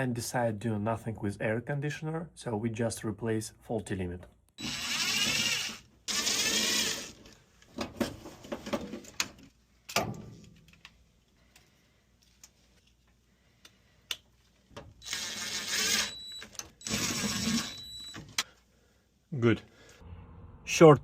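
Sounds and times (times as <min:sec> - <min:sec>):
cordless drill spinning: 0:04.6 - 0:07.4, 0:14.9 - 0:18.2.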